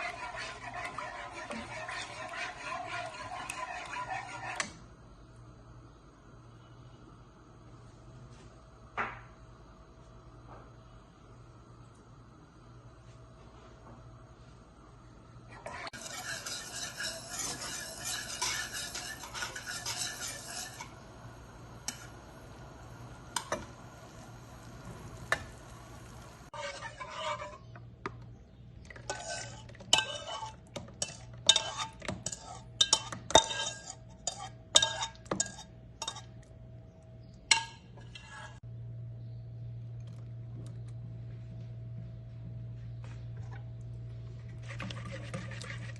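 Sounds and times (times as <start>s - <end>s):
utensil stirring food in a pan: 0.0s - 4.8s, 15.5s - 27.8s, 28.5s - 36.5s, 37.2s - 38.6s, 44.4s - 45.9s
utensil clinking against a pan: 15.9s - 20.9s, 28.9s - 36.3s.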